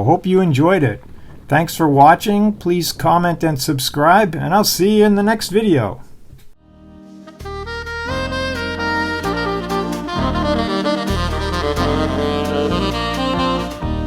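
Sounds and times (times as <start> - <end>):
bass line: 6.6 - 14.0
saxophone melody: 6.7 - 14.0.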